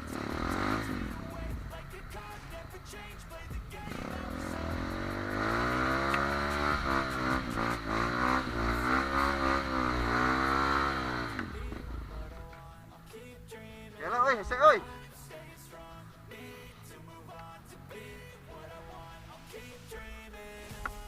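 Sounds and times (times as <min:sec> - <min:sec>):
motorcycle engine revving hard: 0:00.0 - 0:12.2.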